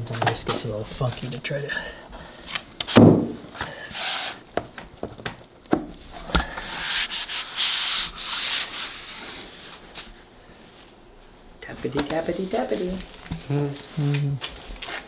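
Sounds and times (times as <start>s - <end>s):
thump: 3.0s - 3.4s.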